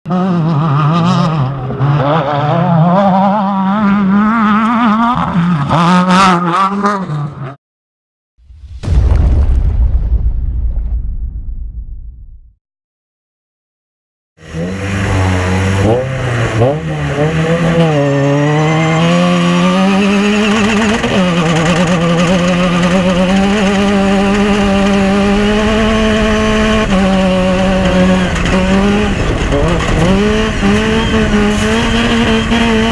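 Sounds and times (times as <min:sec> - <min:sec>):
race vehicle engine revving: 0:00.1 - 0:07.6, 0:14.4 - 0:32.9.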